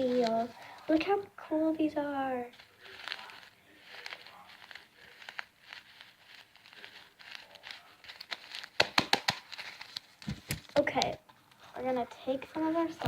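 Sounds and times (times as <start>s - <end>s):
plastic packaging crinkling: 0.0s - 1.2s, 2.5s - 13.0s.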